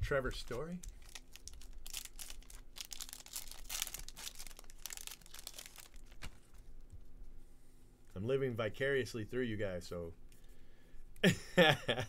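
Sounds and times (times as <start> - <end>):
cards and wrappers rustling: 0.2 - 6.7.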